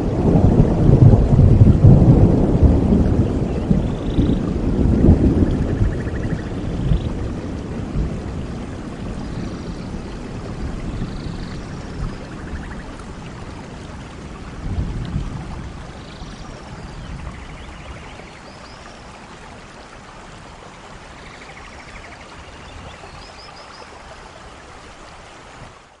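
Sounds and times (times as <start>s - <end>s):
thunder rumbling: 0.0s - 18.3s
steady rain: 0.0s - 26.0s.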